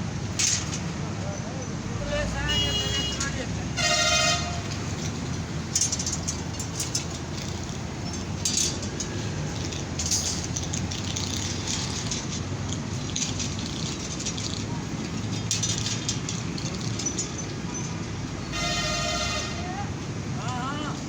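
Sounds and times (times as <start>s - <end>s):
traffic rumble: 0.0s - 21.0s
vehicle horn: 2.4s - 4.8s, 18.5s - 19.8s.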